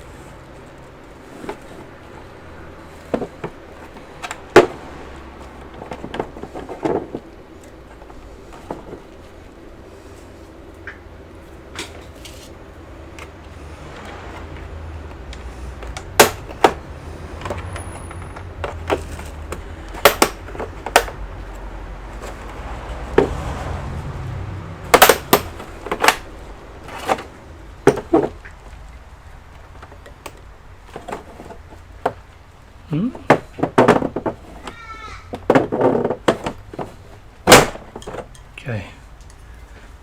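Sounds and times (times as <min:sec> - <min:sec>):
tools and plastic parts clicking: 0:15.1 - 0:21.5, 0:24.9 - 0:26.3.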